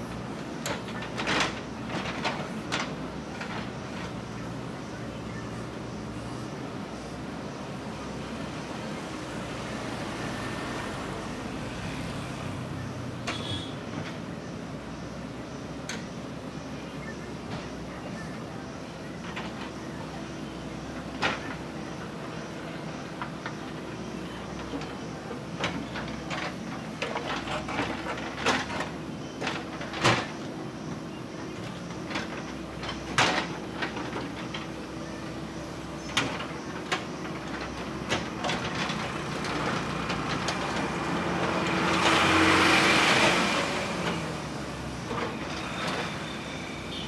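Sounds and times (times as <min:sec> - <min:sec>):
diesel engine running: 0:00.0 - 0:47.0
bucket and arm clanking: 0:19.2 - 0:47.0.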